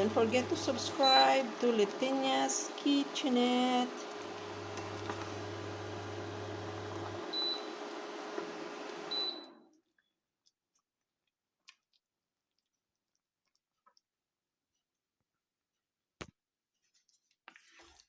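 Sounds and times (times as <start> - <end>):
kitchen appliance humming: 0.0 - 9.7.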